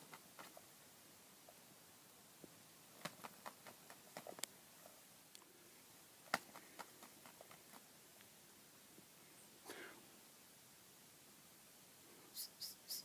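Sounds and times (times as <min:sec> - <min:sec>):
faint irregular clicks: 0:03.0 - 0:05.5.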